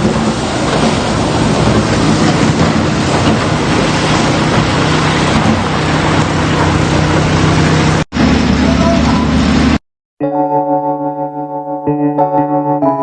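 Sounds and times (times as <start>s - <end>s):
vehicle engine humming: 0.0s - 9.8s
wind or road noise: 0.0s - 9.8s.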